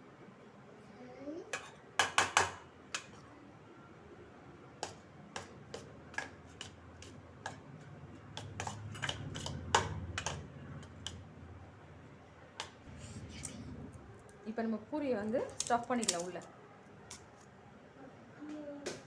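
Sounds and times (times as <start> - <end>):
spoon tapping and scraping bowl: 4.8 - 11.3.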